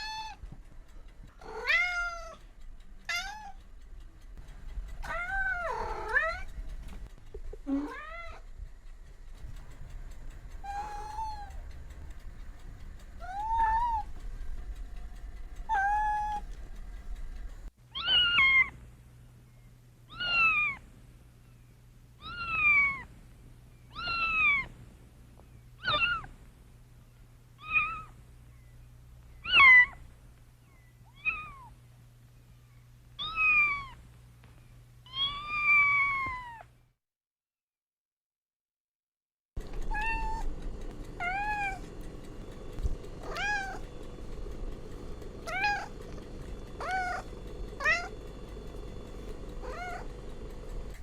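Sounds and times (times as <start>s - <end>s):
cat meowing: 0.0s - 0.4s, 1.4s - 2.4s, 3.0s - 3.6s, 5.0s - 6.5s, 7.7s - 8.4s, 10.6s - 11.6s, 13.2s - 14.1s, 15.7s - 16.5s, 18.0s - 18.7s, 20.1s - 20.8s, 23.9s - 24.7s, 25.8s - 26.3s, 27.6s - 28.1s, 31.1s - 31.7s, 33.2s - 34.0s, 35.1s - 36.7s, 39.8s - 40.5s, 41.2s - 41.8s, 43.2s - 43.9s, 45.4s - 46.2s, 46.8s - 48.2s, 49.6s - 50.1s.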